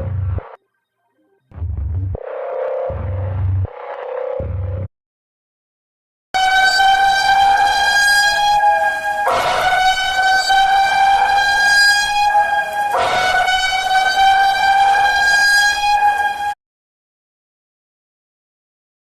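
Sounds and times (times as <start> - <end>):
emergency alert alarm tone: 2.1 - 4.9, 6.4 - 16.6.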